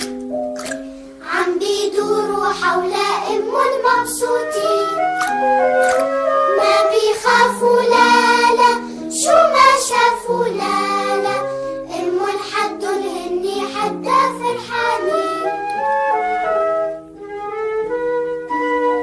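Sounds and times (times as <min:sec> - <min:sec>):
instrumental backing music: 0:00.0 - 0:19.0
children singing: 0:01.2 - 0:15.8.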